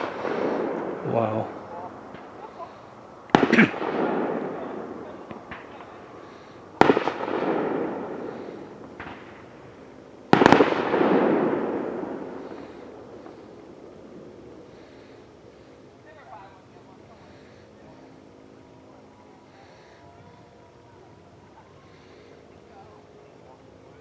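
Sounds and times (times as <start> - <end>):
rumble after bangs: 0.0 - 15.7
fireworks bangs: 0.0 - 16.3.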